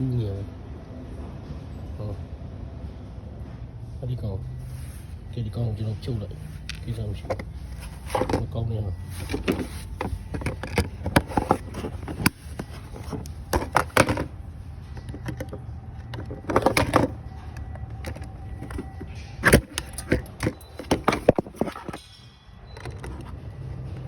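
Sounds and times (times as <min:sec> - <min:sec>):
car parts clicking and rattling: 0:05.8 - 0:24.0.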